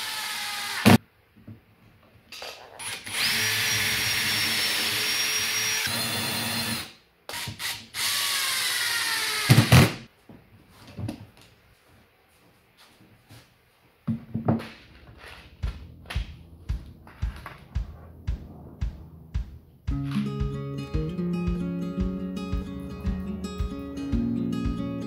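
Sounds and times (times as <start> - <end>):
power drill running: 0.0 - 1.0, 2.9 - 9.6
heavy knock: 15.6 - 20.6.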